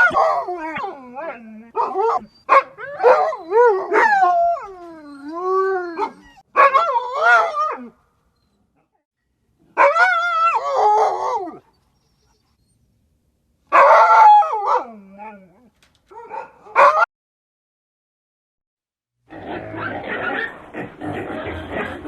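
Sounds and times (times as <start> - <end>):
dog howling: 0.0 - 7.9.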